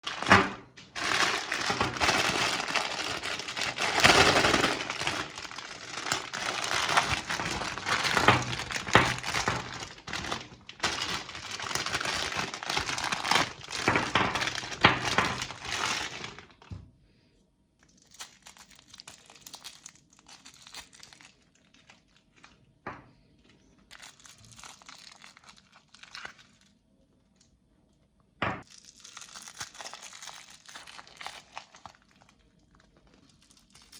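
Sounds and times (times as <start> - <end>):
hard candy crunching in grinder: 0.0 - 16.7, 28.6 - 33.9.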